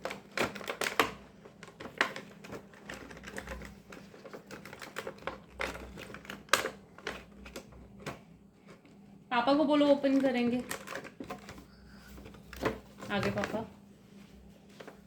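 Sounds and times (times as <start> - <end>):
packaging snapping: 0.0 - 8.2
toy packaging clicks and crinkles: 0.0 - 9.0, 9.8 - 13.7.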